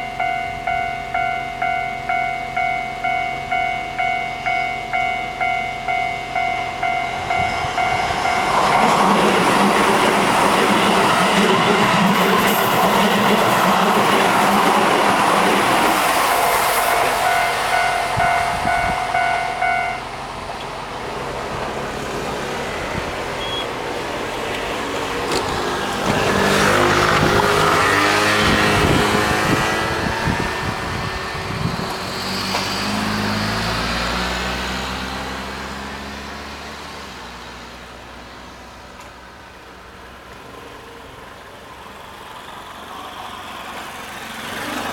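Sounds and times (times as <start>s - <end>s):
level-crossing bell dinging: 0.0s - 9.8s, 15.6s - 20.4s
road vehicle engine: 0.0s - 44.9s
train rumbling on rails: 0.0s - 44.9s.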